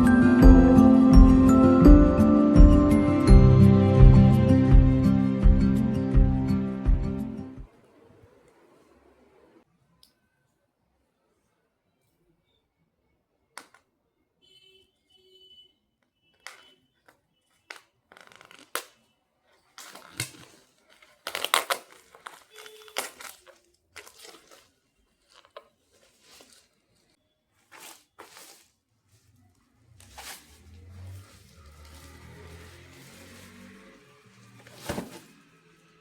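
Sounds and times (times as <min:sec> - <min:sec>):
soft background music: 0:00.0 - 0:07.7
packaging tearing and crinkling: 0:17.7 - 0:28.8, 0:30.0 - 0:35.4.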